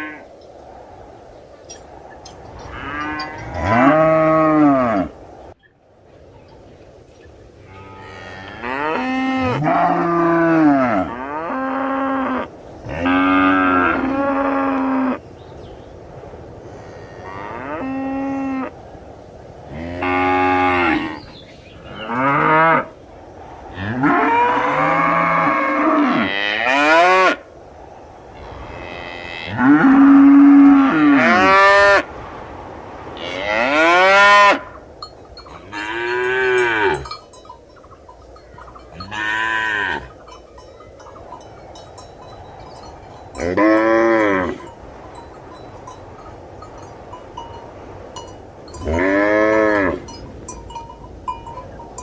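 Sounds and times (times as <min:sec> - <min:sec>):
cows mooing: 0:02.6 - 0:05.1, 0:07.7 - 0:15.2, 0:19.7 - 0:22.9, 0:23.8 - 0:27.4, 0:28.4 - 0:32.0, 0:35.4 - 0:37.3, 0:38.6 - 0:40.3, 0:43.4 - 0:44.7, 0:48.8 - 0:50.2.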